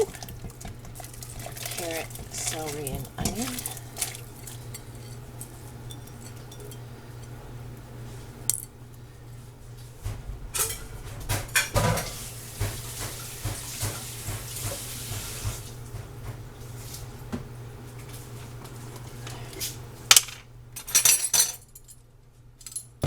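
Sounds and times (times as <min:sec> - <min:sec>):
pot and utensils clattering: 0:00.0 - 0:07.3, 0:10.5 - 0:15.6
steady low hum: 0:00.0 - 0:11.4.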